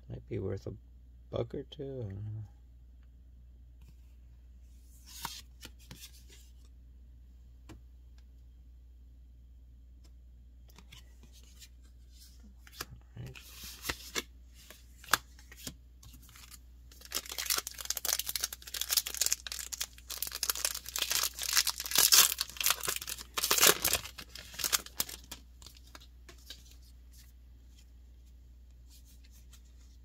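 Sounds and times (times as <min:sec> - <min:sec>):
foil wrapper crackling and tearing: 0:17.0 - 0:25.4.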